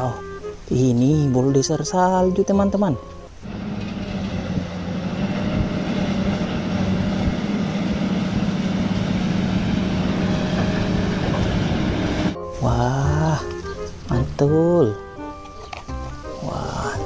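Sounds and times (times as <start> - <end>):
engine droning: 3.3 - 12.4.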